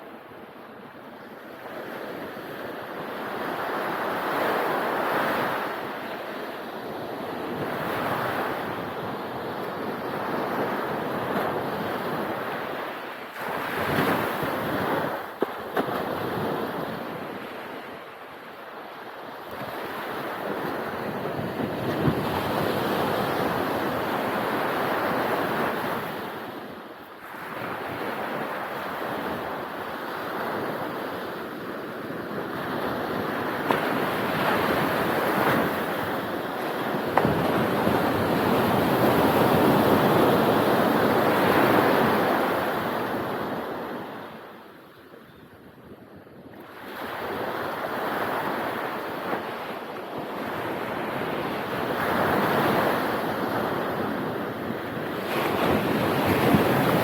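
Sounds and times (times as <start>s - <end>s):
ocean waves breaking: 19.4s - 44.5s, 46.8s - 57.0s
wind buffeting microphone: 19.5s - 26.8s, 30.3s - 44.4s.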